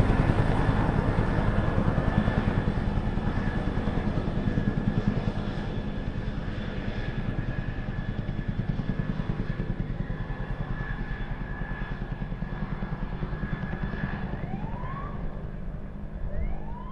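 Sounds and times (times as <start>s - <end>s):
helicopter rotor chopping: 0.0s - 16.9s
helicopter whine: 0.0s - 16.9s
siren wailing: 13.7s - 16.9s.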